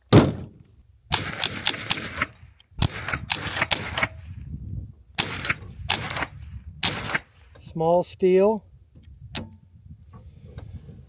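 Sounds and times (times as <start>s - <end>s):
suppressed rifle shots: 1.1s - 4.2s, 5.2s - 7.4s.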